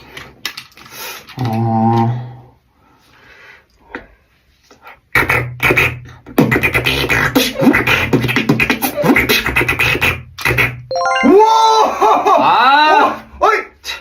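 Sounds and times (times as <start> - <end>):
beatboxing percussive hits: 4.9 - 10.9.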